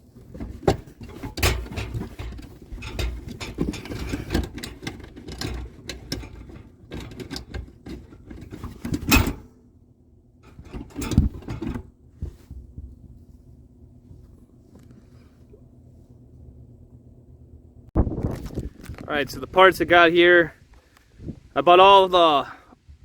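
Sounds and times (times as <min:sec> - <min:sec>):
hand tools clicking and clattering: 0:00.2 - 0:09.5, 0:10.4 - 0:11.9.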